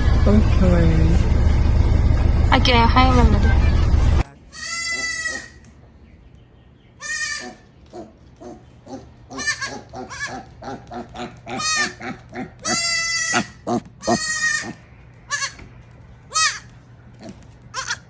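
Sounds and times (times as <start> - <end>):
animal bleating calls: 4.4 - 5.7, 7.0 - 15.6, 16.3 - 18.0.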